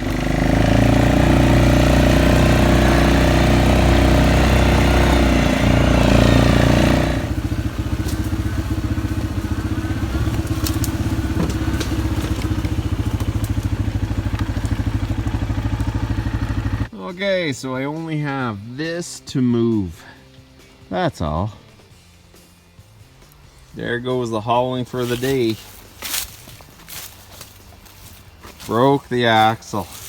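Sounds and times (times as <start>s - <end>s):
small engine running: 0.0s - 16.9s.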